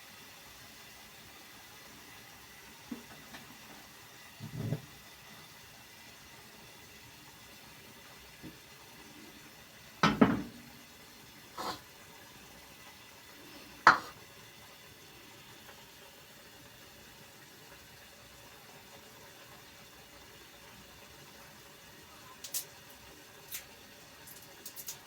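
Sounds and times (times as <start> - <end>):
faint hiss: 0.0 - 25.0
pots and utensils clinking: 4.4 - 4.9, 10.0 - 10.8, 13.9 - 14.2.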